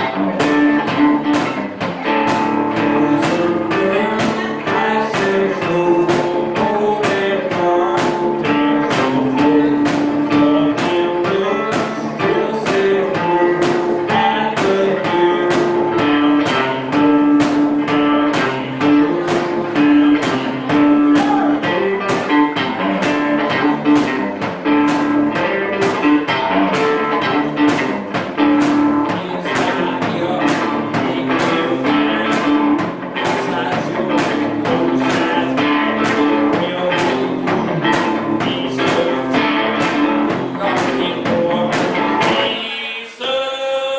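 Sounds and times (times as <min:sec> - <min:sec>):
held melody line: 0:00.0 - 0:42.7
strummed guitar: 0:00.0 - 0:42.9.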